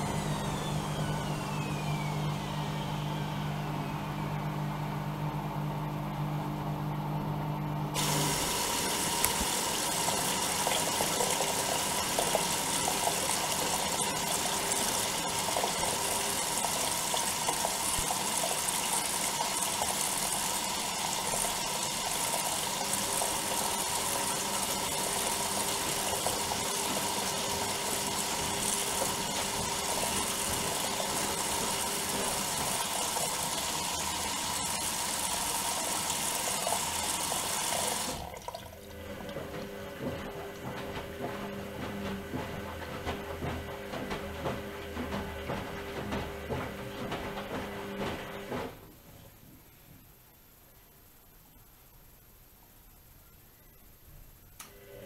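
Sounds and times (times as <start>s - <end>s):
washing machine motor hum: 0.0s - 49.9s, 54.4s - 55.0s
water rushing into drum: 8.0s - 49.0s.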